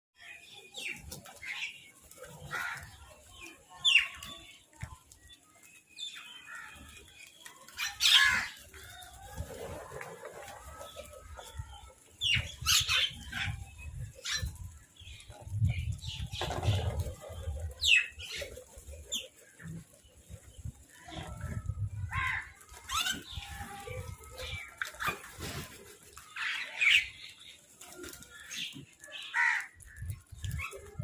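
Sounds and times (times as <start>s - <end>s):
crows and mynahs calling: 2.4s - 3.1s, 7.8s - 9.1s, 22.1s - 24.8s, 28.2s - 30.2s.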